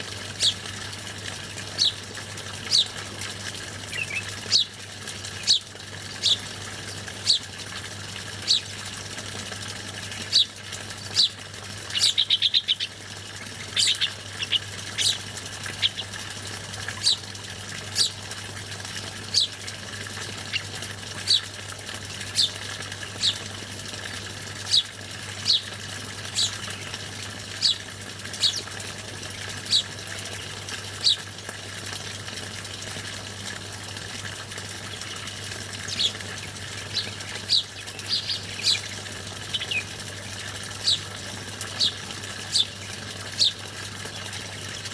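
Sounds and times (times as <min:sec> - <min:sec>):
bird chirping: 0:00.4 - 0:00.6, 0:01.8 - 0:02.0, 0:02.7 - 0:03.0, 0:03.9 - 0:04.7, 0:05.4 - 0:05.6, 0:06.2 - 0:07.5, 0:08.4 - 0:08.7, 0:11.2 - 0:16.1, 0:17.0 - 0:17.3, 0:18.0 - 0:18.2, 0:19.3 - 0:19.6, 0:20.5 - 0:21.5, 0:23.2 - 0:23.4, 0:24.7 - 0:25.7, 0:26.3 - 0:27.0, 0:27.6 - 0:27.8, 0:28.4 - 0:28.7, 0:29.7 - 0:29.9, 0:35.8 - 0:40.0, 0:40.8 - 0:41.1, 0:41.8 - 0:42.8, 0:43.4 - 0:43.6.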